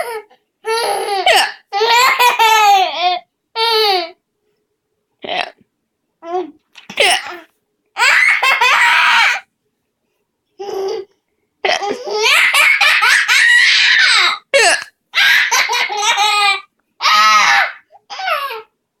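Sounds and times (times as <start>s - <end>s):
hiccups: 5.2s - 5.6s, 14.5s - 15.0s
high-pitched laughter: 8.0s - 9.5s, 11.7s - 14.4s.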